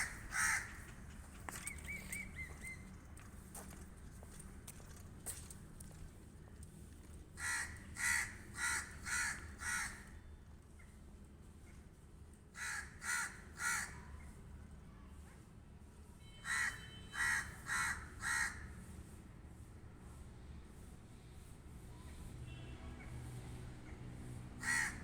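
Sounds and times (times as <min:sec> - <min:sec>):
crow cawing: 0:00.0 - 0:00.8, 0:07.4 - 0:10.1, 0:12.6 - 0:14.0, 0:16.4 - 0:18.7, 0:24.6 - 0:25.0.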